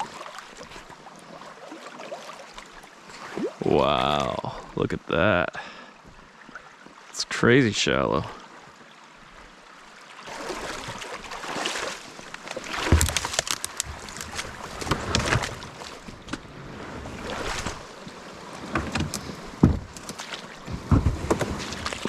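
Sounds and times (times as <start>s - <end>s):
paddle splashes: 0.0s - 4.3s, 8.2s - 22.0s
kayak knocks and thumps: 10.6s - 17.8s, 18.4s - 22.0s.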